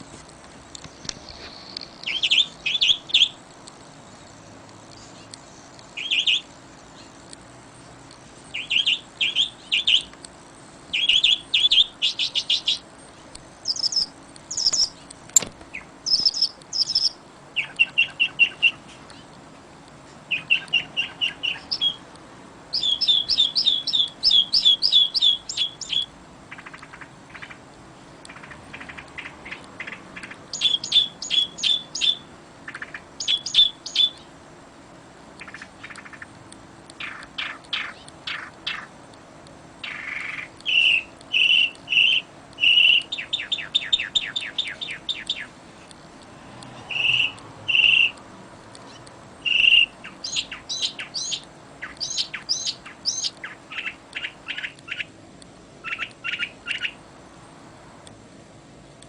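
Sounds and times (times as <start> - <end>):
songbirds chirping and singing: 0.0 - 34.5, 35.2 - 55.2, 55.8 - 57.5
faint steady background noise: 0.0 - 59.0.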